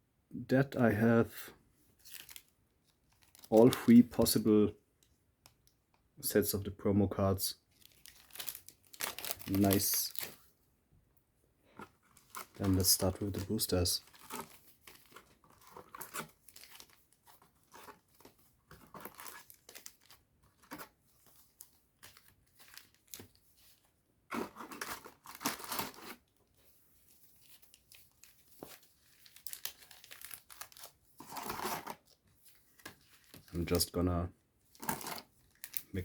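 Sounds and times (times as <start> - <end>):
plastic packaging crinkling and tearing: 2.0 - 4.5, 7.7 - 10.5, 12.0 - 26.4, 27.0 - 33.9, 34.7 - 36.0.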